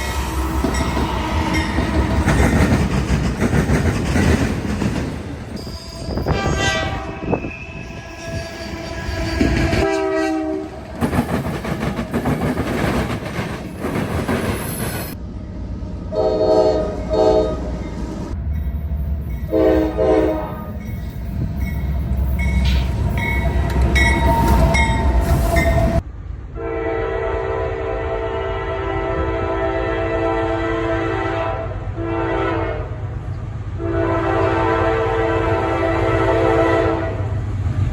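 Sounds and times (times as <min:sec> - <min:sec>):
train rumble and rail clatter: 0:00.0 - 0:37.9
locomotive air horn blasts: 0:06.0 - 0:10.8, 0:16.1 - 0:17.7, 0:19.5 - 0:20.8, 0:26.6 - 0:33.0, 0:33.8 - 0:37.2.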